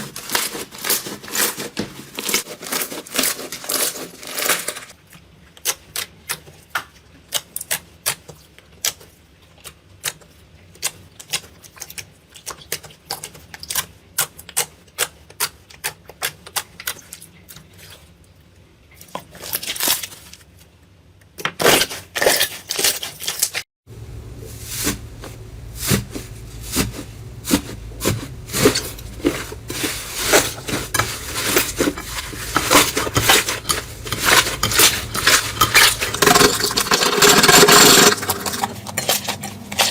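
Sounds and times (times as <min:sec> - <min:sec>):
low hum: 0:23.9 - 0:39.9.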